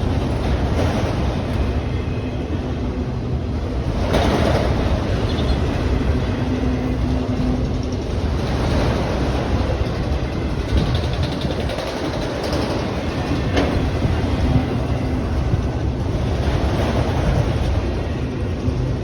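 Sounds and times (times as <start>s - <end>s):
train wheels rumbling on rails: 0.0s - 19.0s
loud train knock: 3.6s - 17.8s.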